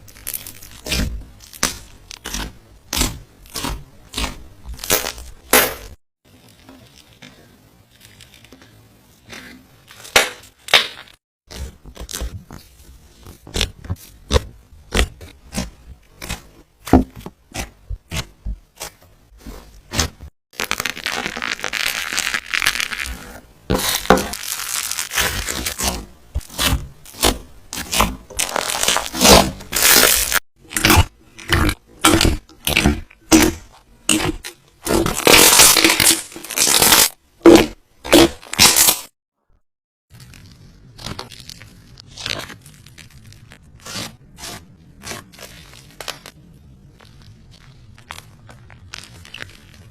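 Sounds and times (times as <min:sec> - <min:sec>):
slime squishing: 0:00.0 - 0:39.1, 0:40.1 - 0:49.9.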